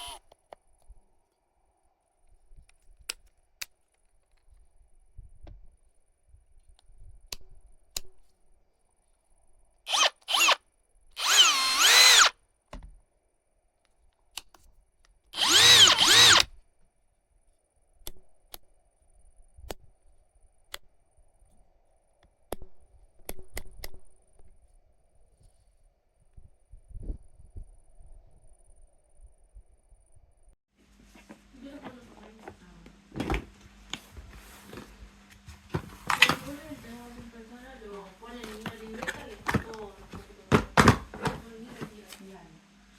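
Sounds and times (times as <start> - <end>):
cordless drill motor running: 0.0 - 0.2, 9.9 - 10.6, 11.2 - 12.4, 15.4 - 16.5.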